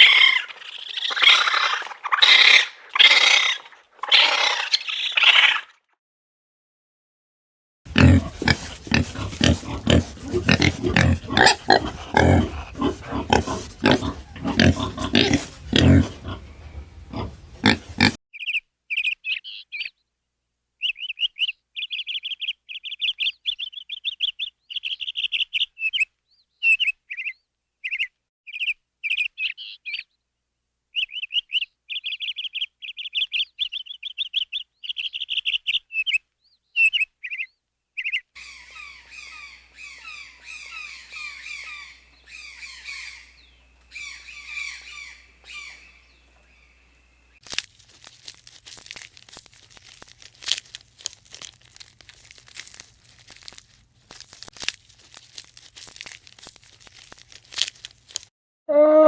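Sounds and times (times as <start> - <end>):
pig grunting: 7.9 - 18.2
birds chirping: 7.9 - 19.9, 31.0 - 47.4
small bird chirping trills: 31.0 - 53.8.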